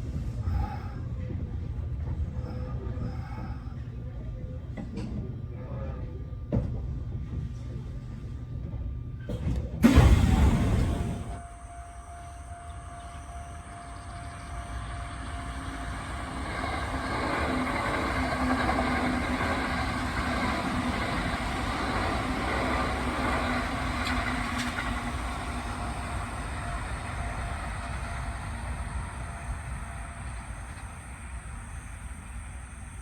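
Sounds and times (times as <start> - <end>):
electric train running past: 9.8 - 33.0.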